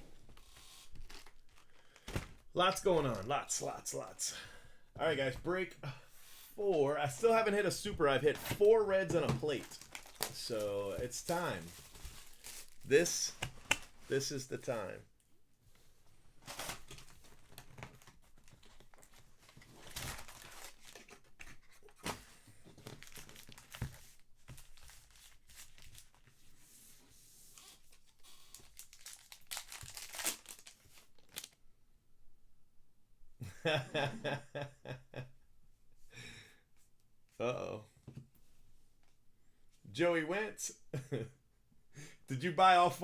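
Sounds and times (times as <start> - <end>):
wrappers crinkling and rustling: 0.2 - 3.3, 7.2 - 14.1, 16.4 - 26.5, 27.5 - 31.6
card packs being torn open: 0.6 - 2.4, 8.3 - 13.9, 16.4 - 21.3, 22.8 - 23.9, 27.6 - 31.6.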